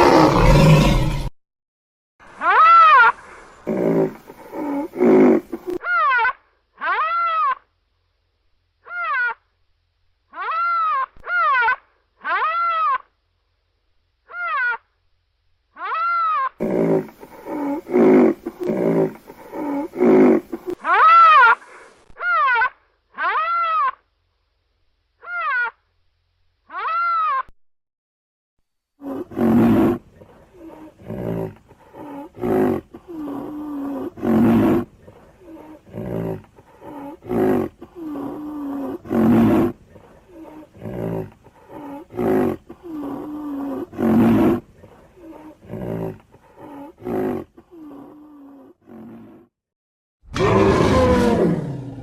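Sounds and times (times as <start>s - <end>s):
high arching creature squeals: 0.0s - 1.3s, 50.3s - 52.0s
rough creature bellowing: 0.0s - 1.3s, 29.0s - 49.5s, 50.3s - 52.0s
drawn-out moan: 29.0s - 49.4s.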